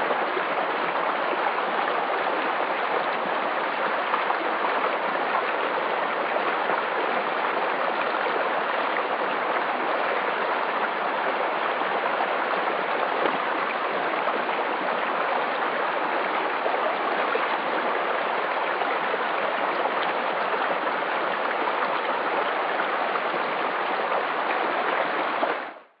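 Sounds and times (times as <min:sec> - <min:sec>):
running water: 0:00.0 - 0:26.0.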